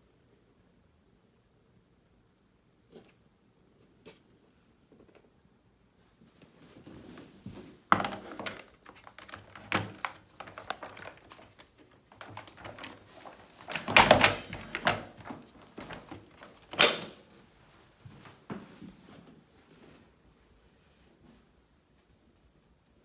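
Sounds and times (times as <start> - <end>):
clicks and knocks of objects: 7.9 - 17.2.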